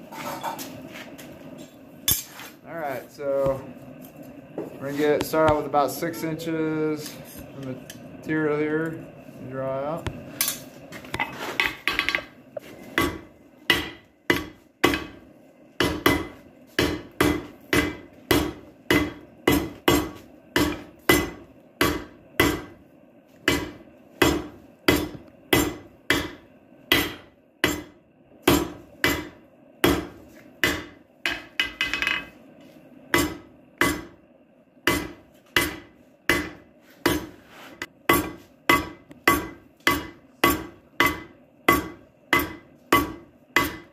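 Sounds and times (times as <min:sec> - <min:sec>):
hammer striking steel on anvil: 0:12.9 - 0:15.2, 0:15.8 - 0:22.8, 0:23.4 - 0:32.3, 0:33.1 - 0:34.2, 0:34.8 - 0:37.3, 0:38.1 - 0:43.9.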